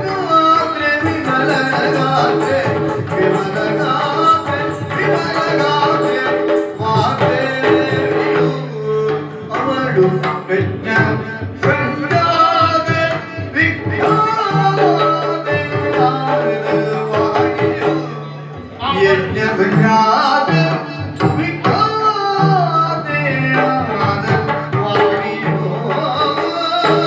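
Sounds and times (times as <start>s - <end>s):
drums: 0.0s - 27.0s
person singing: 0.0s - 27.0s.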